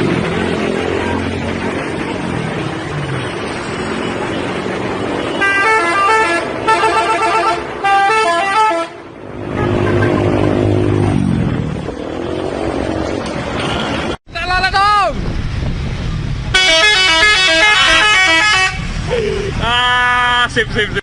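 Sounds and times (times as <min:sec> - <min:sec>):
bus engine running: 0:00.0 - 0:14.2
traffic noise: 0:00.0 - 0:21.0
bus musical horn tune: 0:05.3 - 0:10.0, 0:16.5 - 0:18.9.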